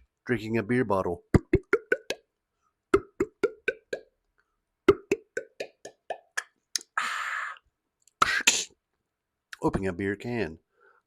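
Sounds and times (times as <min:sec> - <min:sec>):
mouth-made glugging plops: 0:01.4 - 0:02.2, 0:03.0 - 0:04.1, 0:04.9 - 0:06.5.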